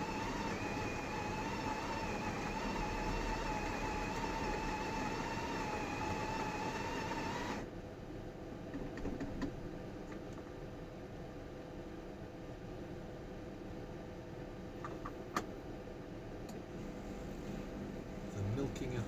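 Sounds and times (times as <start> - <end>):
coffee grinder whining: 0.0 - 7.6.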